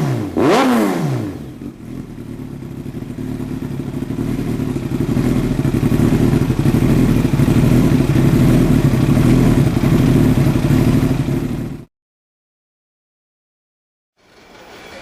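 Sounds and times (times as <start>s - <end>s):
motorcycle engine running loud: 0.0s - 11.9s.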